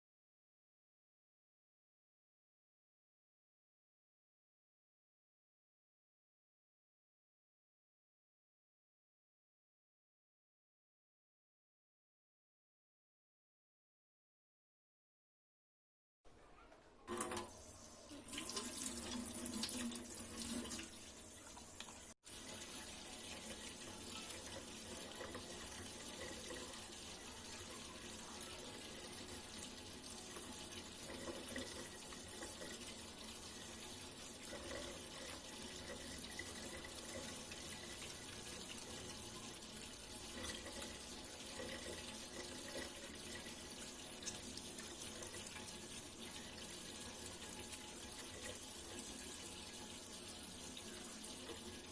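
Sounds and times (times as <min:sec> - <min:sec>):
water running from tap into sink: 0:17.1 - 0:51.9.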